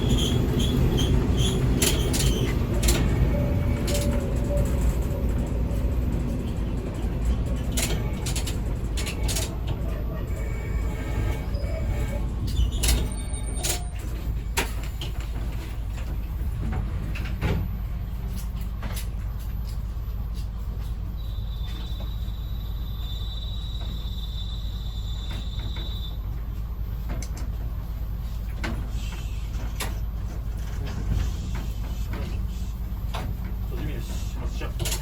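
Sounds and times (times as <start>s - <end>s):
wheels clicking over rail joints: 0.0s - 10.4s, 25.3s - 35.0s
railcar engine rumble: 0.0s - 35.0s.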